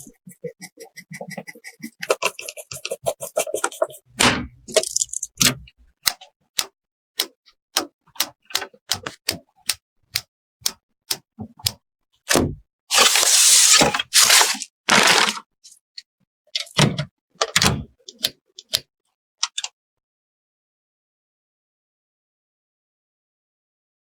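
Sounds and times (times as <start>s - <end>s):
computer parts clicking and tapping: 4.6s - 9.8s.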